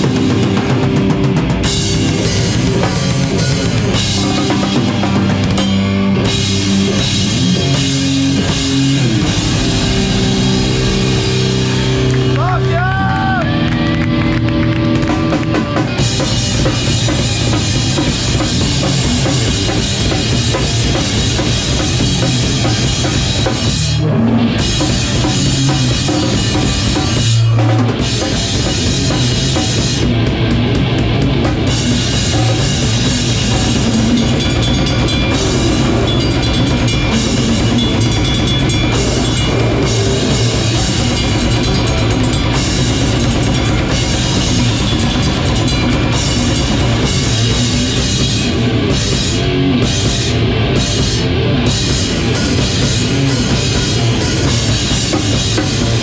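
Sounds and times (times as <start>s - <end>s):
bass drum and snare: 0.0s - 13.0s
live rock band playing: 0.0s - 56.0s.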